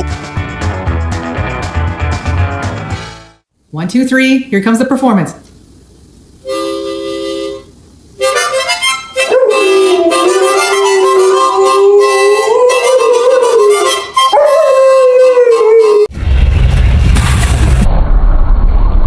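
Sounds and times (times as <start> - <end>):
harmonica chord: 6.4 - 16.1
dog howling: 9.2 - 16.1.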